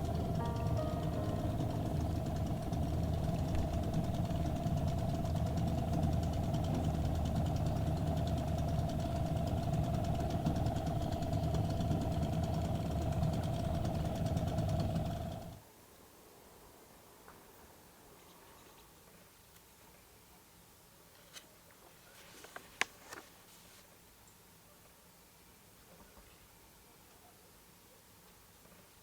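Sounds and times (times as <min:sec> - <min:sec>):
engine idling with fast ticking: 0:00.0 - 0:15.6.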